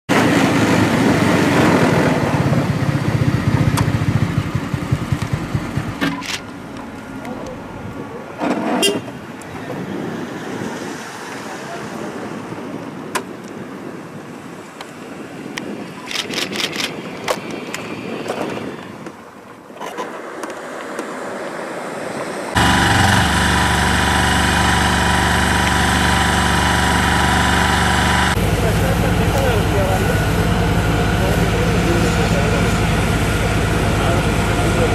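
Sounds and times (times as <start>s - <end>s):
engine throbbing: 0.1s - 8.1s, 22.5s - 34.9s
outdoor background noise: 0.1s - 34.9s.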